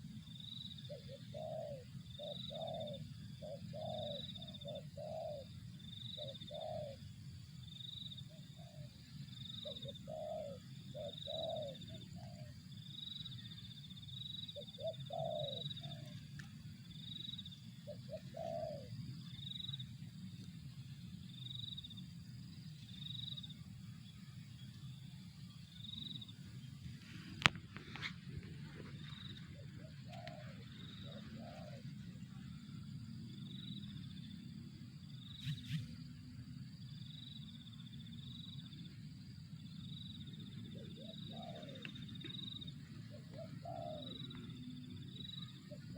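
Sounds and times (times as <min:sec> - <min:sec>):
dove cooing: 0:00.8 - 0:07.1, 0:08.5 - 0:09.0, 0:09.6 - 0:12.7, 0:14.4 - 0:19.8, 0:27.0 - 0:33.5, 0:40.4 - 0:45.9.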